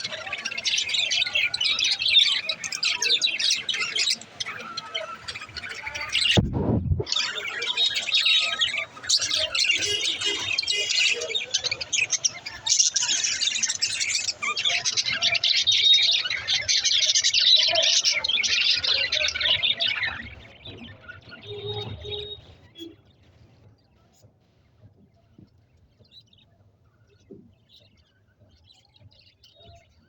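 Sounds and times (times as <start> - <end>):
budgerigars chattering: 0.0 - 6.4, 7.1 - 22.8
low thump: 6.4 - 7.1.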